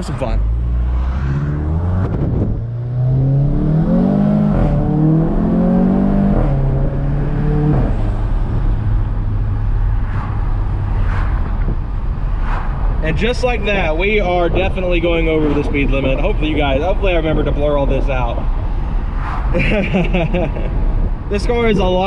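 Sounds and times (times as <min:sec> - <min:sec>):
car engine accelerating hard: 0:00.0 - 0:11.8.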